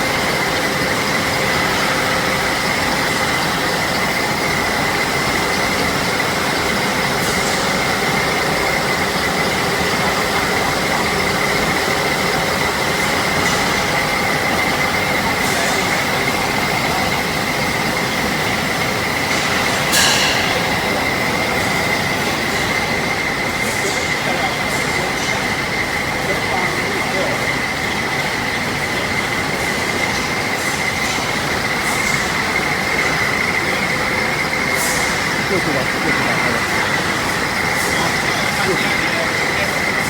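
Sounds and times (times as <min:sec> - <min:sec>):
wire drawing machine running: 0:00.0 - 0:40.0.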